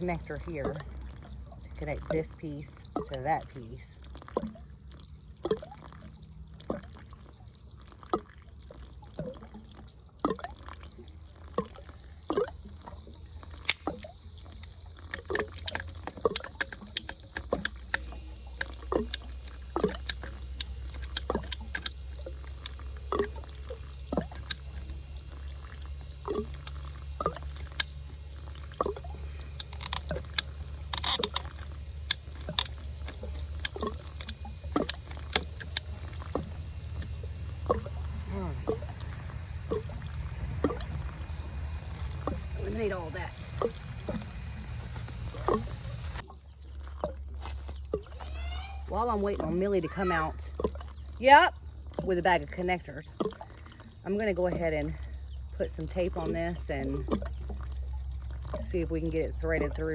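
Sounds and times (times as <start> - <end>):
water dripping and trickling: 0.0 - 59.9
steady high hiss: 12.6 - 46.2.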